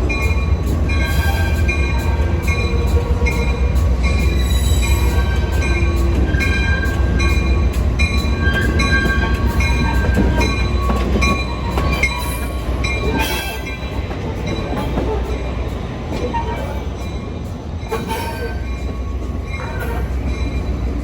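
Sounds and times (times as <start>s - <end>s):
diesel train rumbling: 0.0s - 21.0s.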